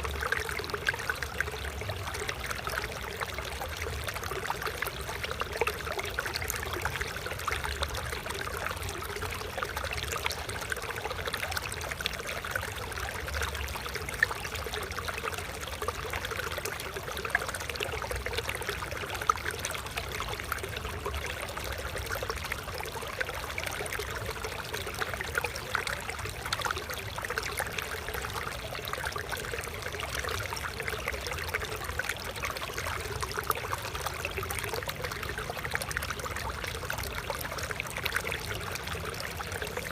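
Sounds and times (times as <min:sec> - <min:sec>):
water trickling: 0:00.0 - 0:39.9.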